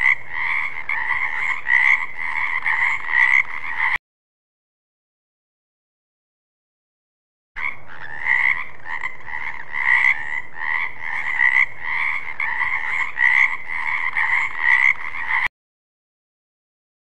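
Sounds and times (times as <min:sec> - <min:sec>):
frogs croaking: 0:00.0 - 0:04.0, 0:07.6 - 0:15.5.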